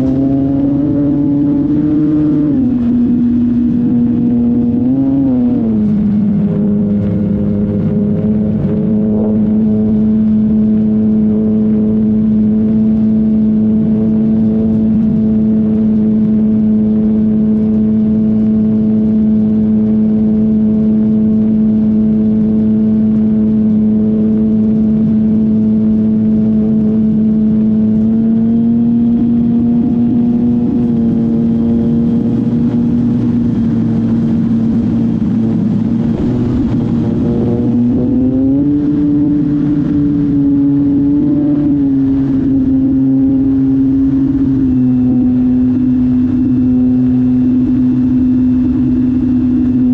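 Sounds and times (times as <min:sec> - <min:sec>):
wind rushing: 0:29.2 - 0:47.7.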